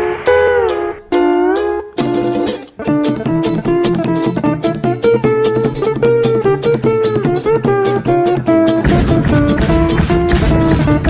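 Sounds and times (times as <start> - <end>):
bass line: 0.0 - 1.9
plucked guitar run: 0.0 - 11.0.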